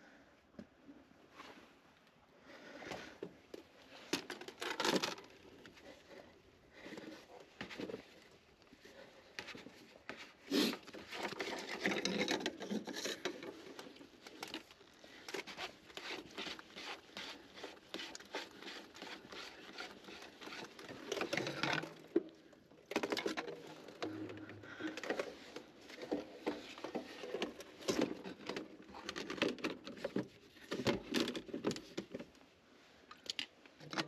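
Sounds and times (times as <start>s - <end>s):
small clicks and knocks of tools: 33.1s - 34.0s.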